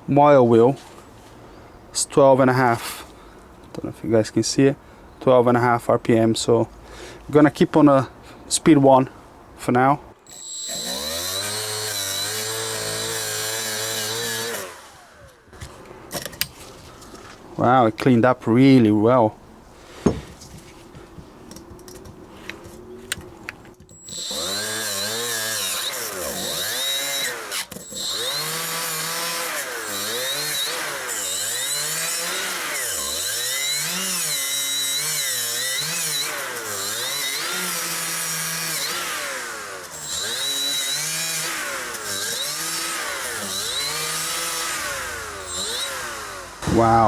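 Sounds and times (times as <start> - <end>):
die grinder wire wheel on metal: 10.3 - 15.2, 38.8 - 47.0.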